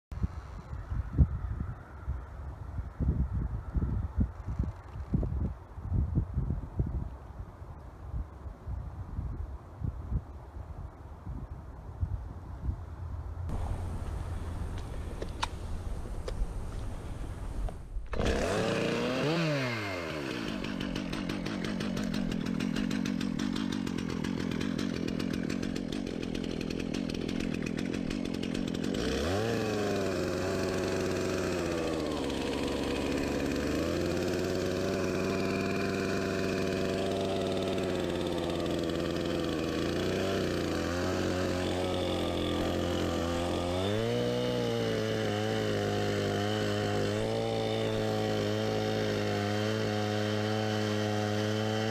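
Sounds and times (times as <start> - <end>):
chainsaw engine revving and idling: 13.5 - 51.9.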